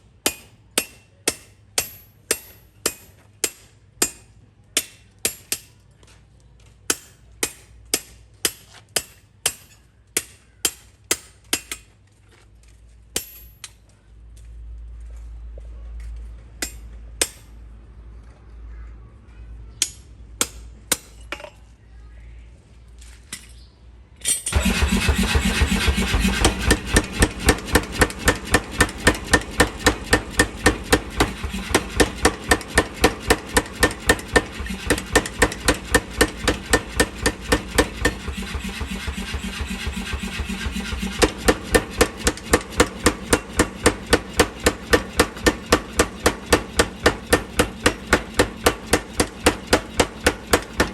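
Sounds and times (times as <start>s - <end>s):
power hammer striking steel: 0.3s - 4.2s, 24.5s - 50.9s
motor hum: 24.5s - 50.9s
metal knocks: 25.9s - 50.9s.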